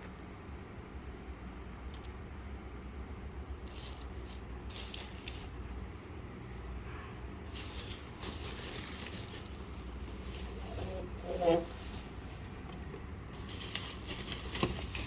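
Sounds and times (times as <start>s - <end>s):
packaging rustling: 3.7s - 5.6s, 7.5s - 15.0s.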